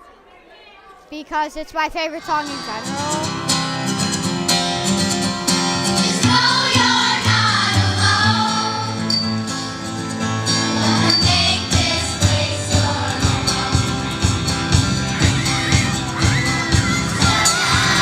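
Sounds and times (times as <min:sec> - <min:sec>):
instrumental accompaniment: 0:02.3 - 0:18.0
choir singing: 0:05.7 - 0:09.2, 0:10.4 - 0:18.0.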